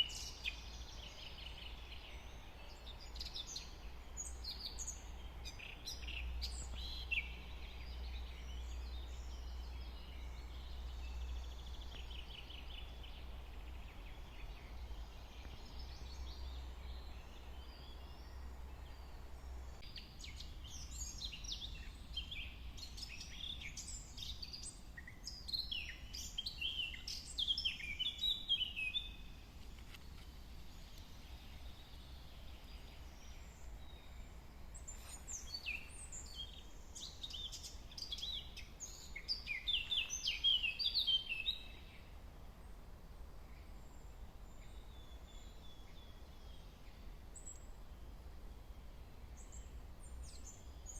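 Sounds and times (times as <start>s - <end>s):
songbirds singing and calling: 0.0s - 50.9s.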